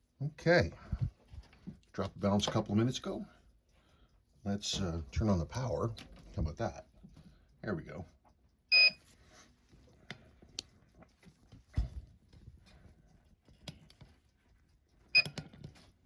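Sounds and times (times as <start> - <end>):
two-tone electronic beep: 8.7 - 9.0.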